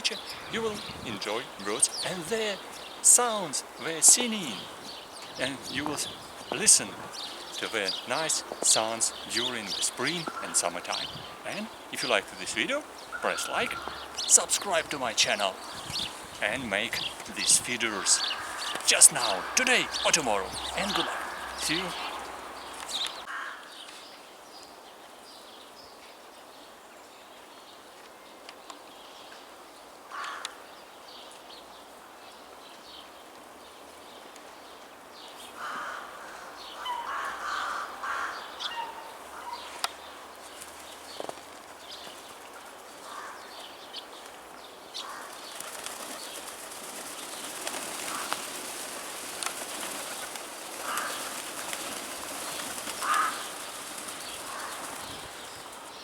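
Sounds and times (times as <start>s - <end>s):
steady hiss: 0.0s - 23.3s
birds chirping and calling: 0.0s - 23.6s, 35.5s - 42.3s, 45.0s - 56.0s.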